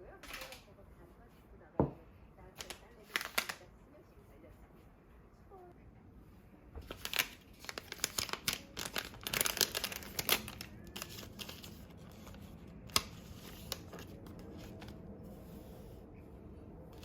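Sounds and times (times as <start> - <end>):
clicks and crinkling rustles: 2.6 - 3.6, 6.8 - 15.1
steady low hum: 10.5 - 17.0.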